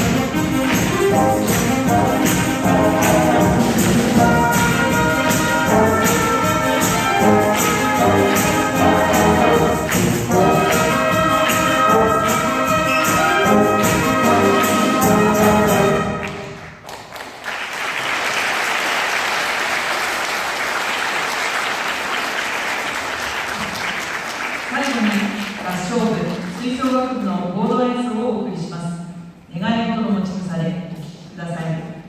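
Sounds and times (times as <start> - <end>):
audience applauding: 0.0 - 13.4, 16.2 - 27.0
wind band playing: 0.0 - 16.6.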